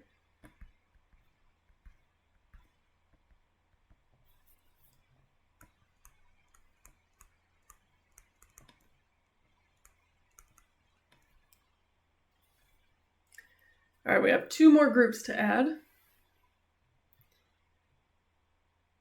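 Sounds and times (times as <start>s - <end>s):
faint clicks and taps: 0.0s - 11.8s.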